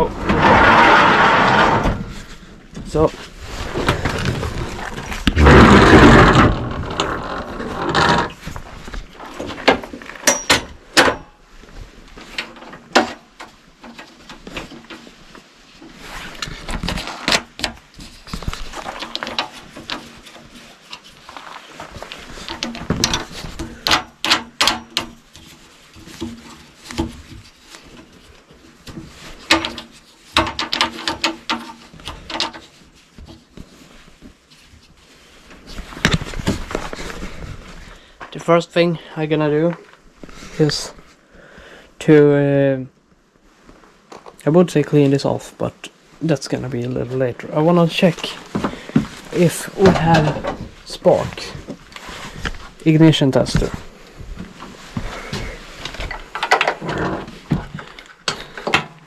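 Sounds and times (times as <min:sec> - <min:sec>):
tools clattering on hard surfaces: 0:10.2 - 0:11.3.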